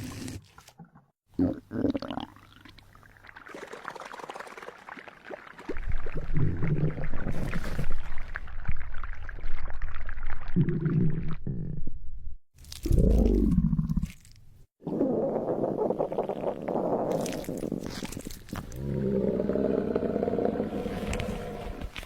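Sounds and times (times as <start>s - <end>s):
stomach gurgling and rumbling: 5.3s - 22.0s.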